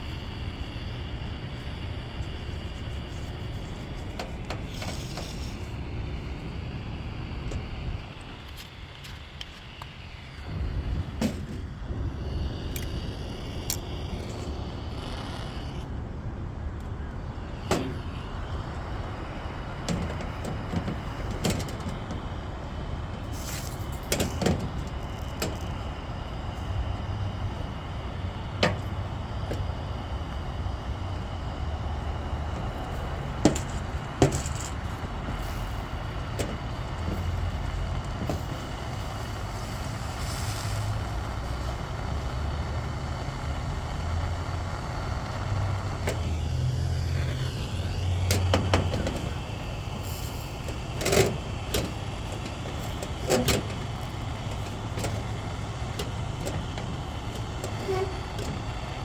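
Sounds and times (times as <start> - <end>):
steady low rumble: 0.0 - 59.0
taps on metal gutter: 33.3 - 35.4.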